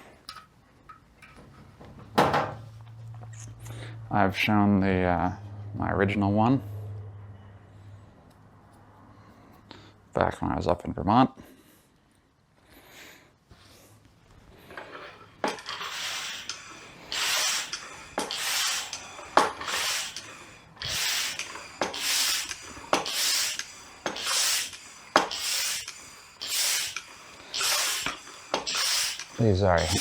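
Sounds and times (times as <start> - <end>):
hand pump hissing: 14.8 - 30.0.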